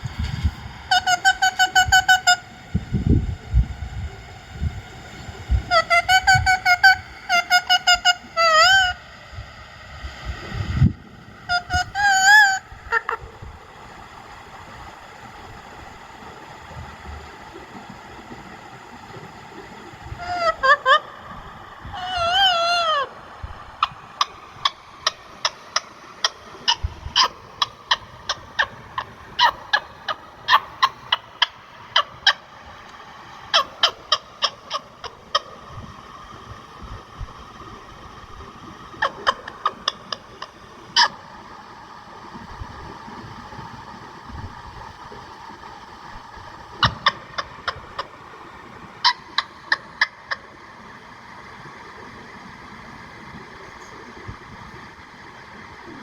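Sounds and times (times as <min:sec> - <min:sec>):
parrot warbling call: 0:00.9 - 0:02.6, 0:05.6 - 0:09.0, 0:11.5 - 0:13.3, 0:20.1 - 0:32.4, 0:33.5 - 0:35.5, 0:39.0 - 0:41.2.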